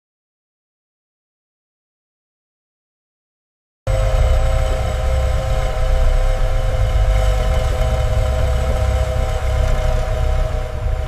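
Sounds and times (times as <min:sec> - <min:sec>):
car engine idling: 0:03.9 - 0:11.0.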